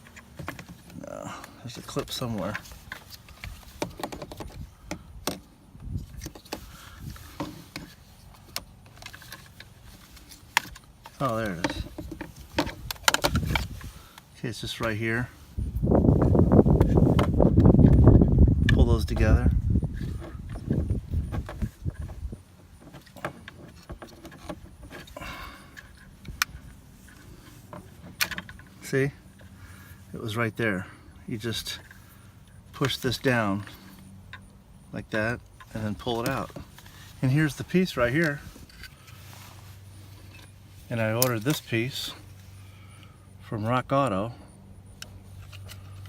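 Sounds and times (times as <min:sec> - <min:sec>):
plastic clicks and rattles: 0:02.0 - 0:05.5, 0:07.2 - 0:14.3.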